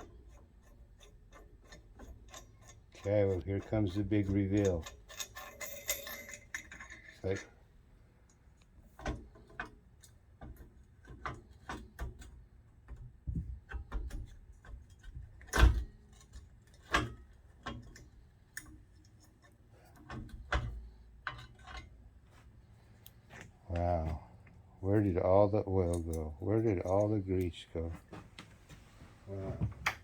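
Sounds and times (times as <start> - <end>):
metallic clicks and knocks: 0.0 - 7.5, 8.3 - 22.0.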